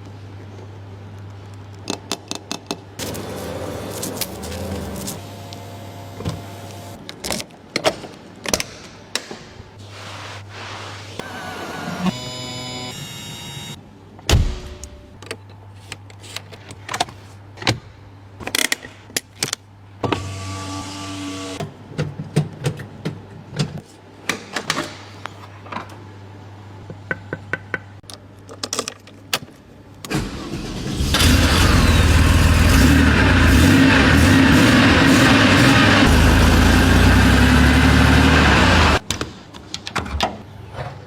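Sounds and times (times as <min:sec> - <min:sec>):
car engine starting and running: 0:30.1 - 0:39.0.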